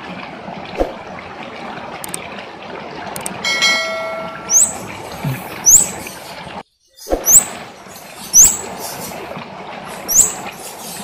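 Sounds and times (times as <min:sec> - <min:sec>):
bird whistling call: 0:04.5 - 0:04.8, 0:05.6 - 0:06.0, 0:07.1 - 0:07.5, 0:08.3 - 0:08.7, 0:10.1 - 0:10.4.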